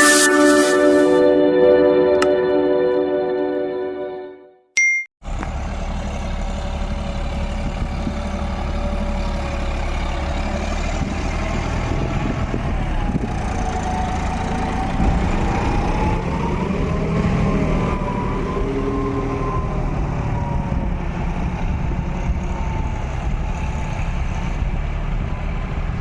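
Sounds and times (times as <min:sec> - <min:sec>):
tractor diesel engine running: 0:05.2 - 0:26.0.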